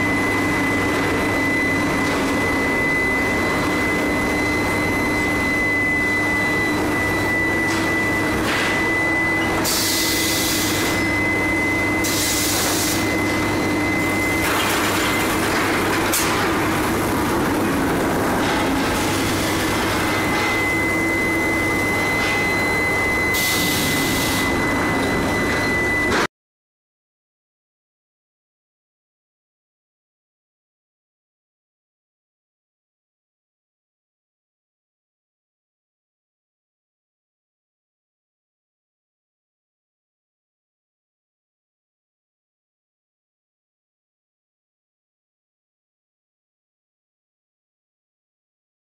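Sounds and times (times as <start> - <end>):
furnace industrial drone: 0.0 - 26.3
high-pitched whine: 0.0 - 26.3.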